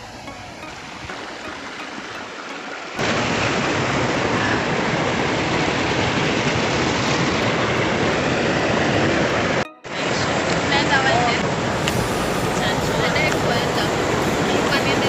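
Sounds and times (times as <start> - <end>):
waterfall rushing water: 0.0 - 15.0.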